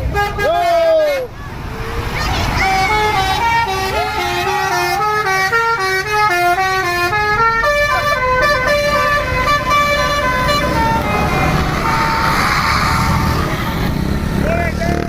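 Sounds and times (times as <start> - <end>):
bus engine running: 0.0 - 15.0
multi-tone horn playing melody: 2.6 - 13.6.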